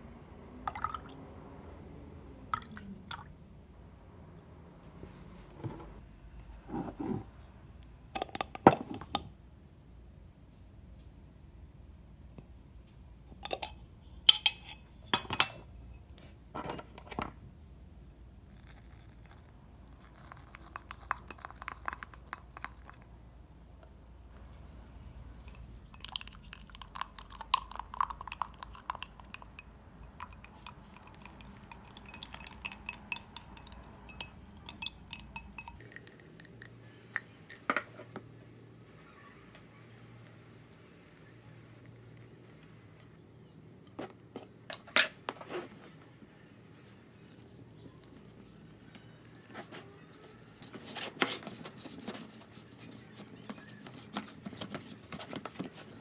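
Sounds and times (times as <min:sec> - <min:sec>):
utensils and bowls clinking: 0:13.4 - 0:16.0, 0:25.4 - 0:38.1.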